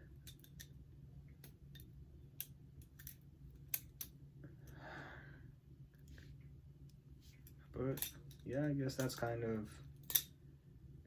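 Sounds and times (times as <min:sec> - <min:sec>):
soft rustle: 0:06.0 - 0:08.5.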